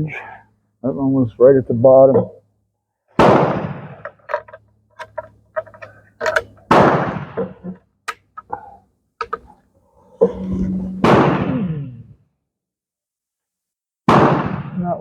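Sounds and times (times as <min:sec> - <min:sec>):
rifle shots echoing: 0:03.2 - 0:04.1, 0:06.2 - 0:07.5
small clicks and knocks: 0:04.0 - 0:06.7, 0:09.2 - 0:09.6.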